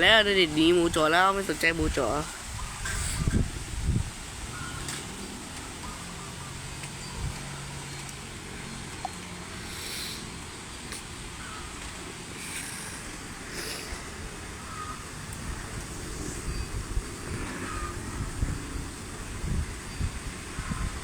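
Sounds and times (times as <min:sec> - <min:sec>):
hissy wind gusts: 0:00.0 - 0:21.0
wind rumbling on microphone: 0:00.0 - 0:21.0.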